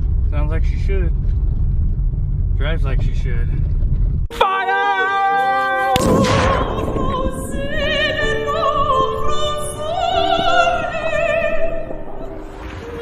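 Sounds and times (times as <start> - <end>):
operatic singing: 4.3 - 13.0.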